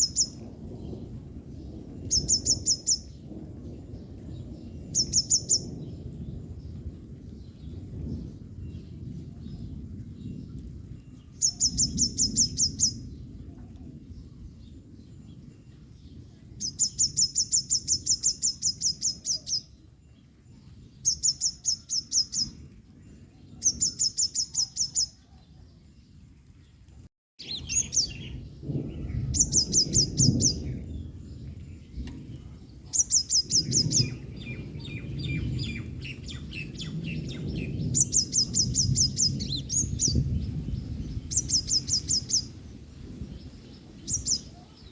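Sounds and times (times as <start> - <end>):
fainter lower bird calls: 0.0 - 1.0, 2.1 - 3.2, 11.2 - 13.2, 16.1 - 26.8.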